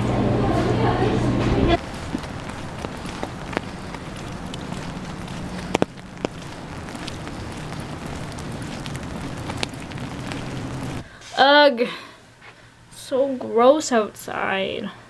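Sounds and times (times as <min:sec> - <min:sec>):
low steady hum: 0:00.0 - 0:15.0
steady rain falling: 0:01.7 - 0:11.2.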